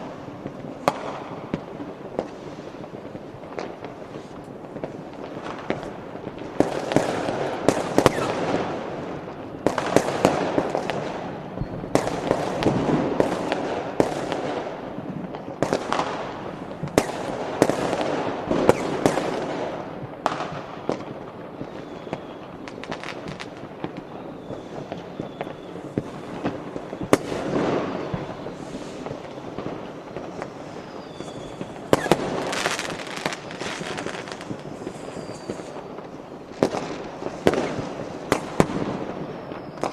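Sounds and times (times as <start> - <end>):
fireworks bangs and crackling: 0.0 - 39.9
faint firework whistles: 6.5 - 13.6, 15.6 - 19.7, 20.3 - 39.9.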